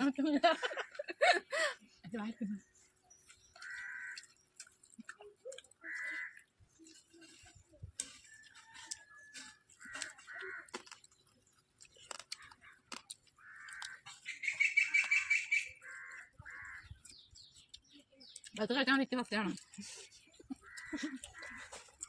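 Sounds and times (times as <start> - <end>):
bird calling: 3.5 - 4.4, 13.4 - 17.4.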